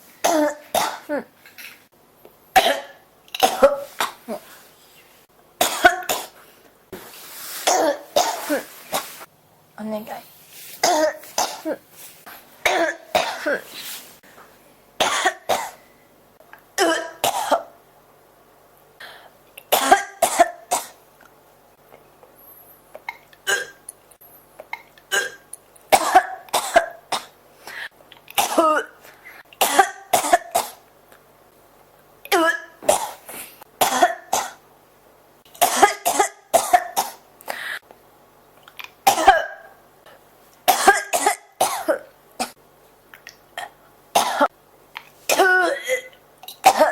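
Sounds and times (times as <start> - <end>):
person coughing: 0.2 - 1.3, 2.6 - 4.4, 5.6 - 6.4, 7.7 - 9.1, 10.8 - 11.8, 12.6 - 13.7, 16.8 - 17.7, 23.1 - 23.8, 25.1 - 30.8, 35.6 - 37.8, 39.1 - 39.8, 40.7 - 42.1, 43.6 - 44.5, 45.3 - 46.9
quiet breaths: 19.0 - 19.5, 37.4 - 38.0.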